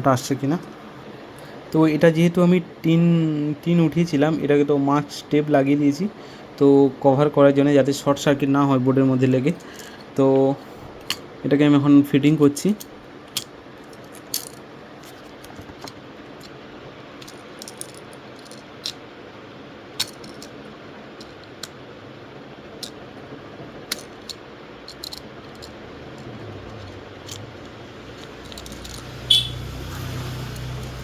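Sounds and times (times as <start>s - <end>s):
faint steady hum: 0.0s - 30.0s
small clicks and taps of parts: 12.8s - 16.6s, 17.2s - 19.0s, 20.0s - 20.6s, 23.8s - 29.1s.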